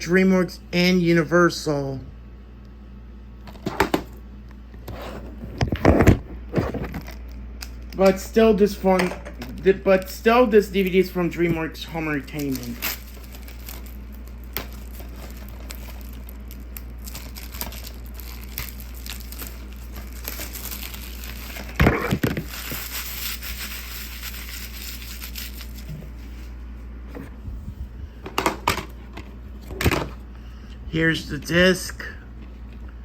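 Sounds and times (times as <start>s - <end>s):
plastic case crinkling: 12.2s - 25.9s.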